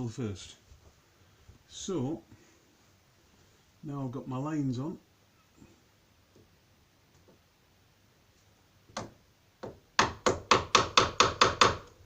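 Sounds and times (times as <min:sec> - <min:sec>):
hammer striking chisel: 0:09.0 - 0:11.9.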